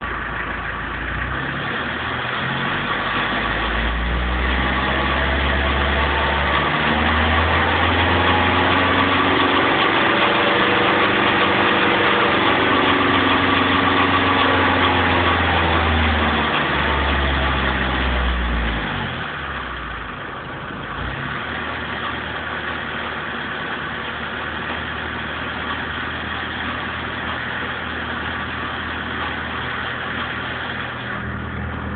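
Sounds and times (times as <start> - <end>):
diesel engine revving: 0.0 - 31.9.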